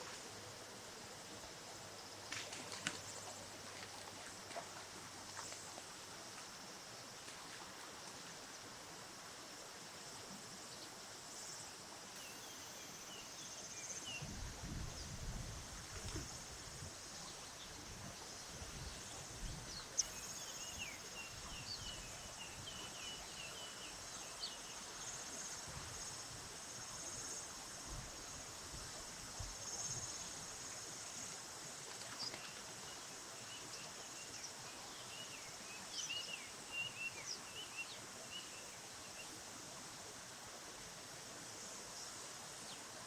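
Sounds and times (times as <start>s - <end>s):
small birds chirping: 32.0s - 39.3s.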